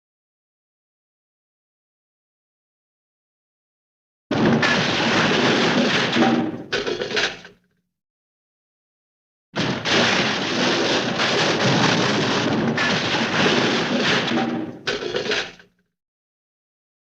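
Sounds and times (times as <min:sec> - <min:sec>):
cartoon junk crash: 0:04.3 - 0:07.6, 0:09.6 - 0:15.8
sharp impacts: 0:04.3 - 0:07.6, 0:09.6 - 0:15.6.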